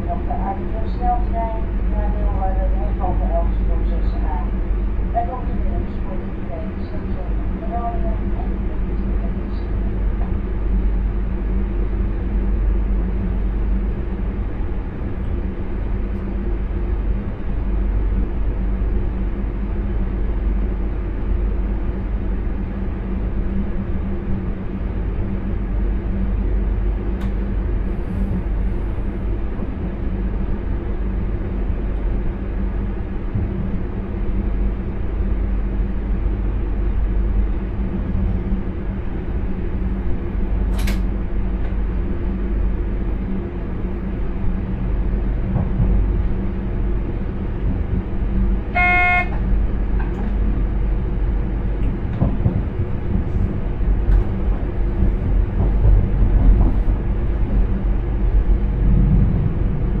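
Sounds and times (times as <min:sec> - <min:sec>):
train cab rumble: 0:00.0 - 1:00.0
sharp click: 0:40.7 - 0:41.1
high-pitched train horn toot: 0:48.7 - 0:49.5.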